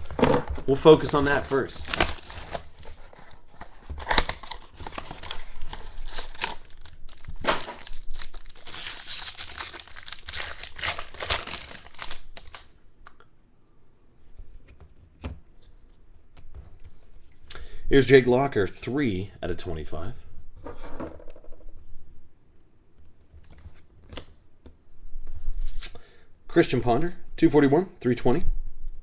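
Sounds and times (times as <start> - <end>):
plastic packaging crinkling and tearing: 0.9 - 12.7.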